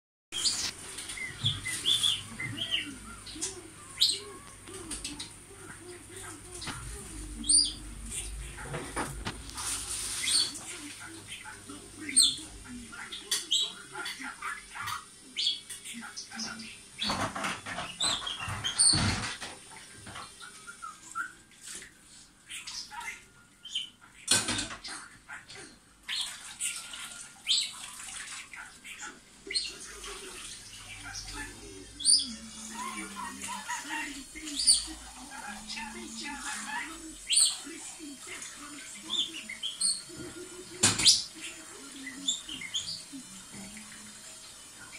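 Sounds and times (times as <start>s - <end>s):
budgerigar chirping and warbling: 0.3s - 19.4s, 22.4s - 26.8s, 27.4s - 43.6s
household background noise: 0.3s - 44.9s
budgerigar warbling: 30.8s - 37.6s.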